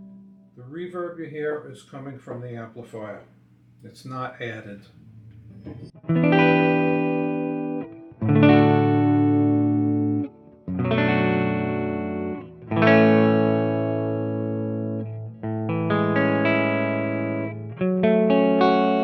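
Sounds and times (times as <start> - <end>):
clean electric guitar chords: 0.0 - 0.7, 4.9 - 19.0.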